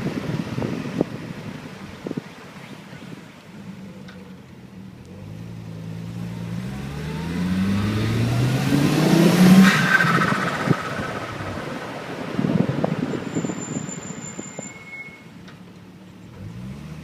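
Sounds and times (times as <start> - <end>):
car engine accelerating hard: 5.0 - 13.2, 16.3 - 17.0.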